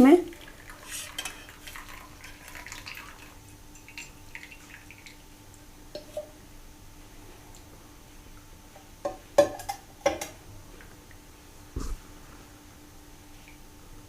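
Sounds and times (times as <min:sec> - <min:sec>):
liquid trickling and dripping: 0:00.2 - 0:06.3.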